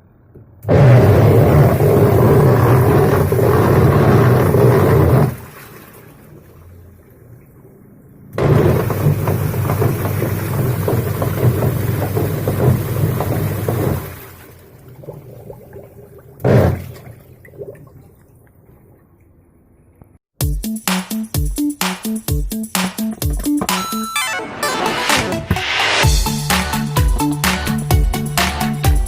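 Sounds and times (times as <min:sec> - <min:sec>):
washing machine running roughly: 0:00.7 - 0:05.8, 0:08.4 - 0:14.5.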